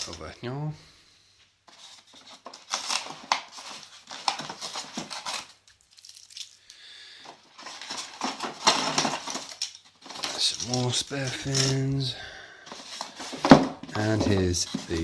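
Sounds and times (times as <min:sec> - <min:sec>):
packaging rustling and crinkling: 0:01.7 - 0:06.6, 0:07.2 - 0:15.0.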